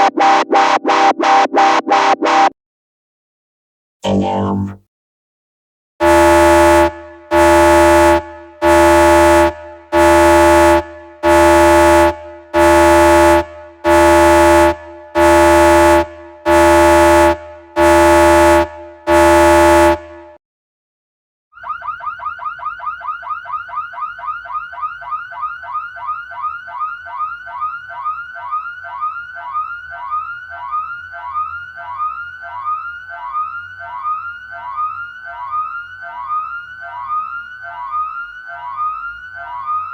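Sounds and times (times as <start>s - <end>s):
electronic warbling siren: 4.0s - 4.8s, 21.6s - 39.9s
horn-like alarm blasts: 6.0s - 20.4s.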